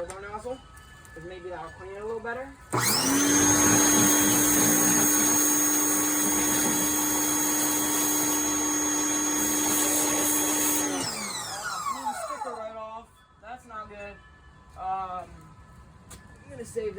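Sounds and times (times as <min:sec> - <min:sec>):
pressure washer motor whine: 0:02.7 - 0:12.7.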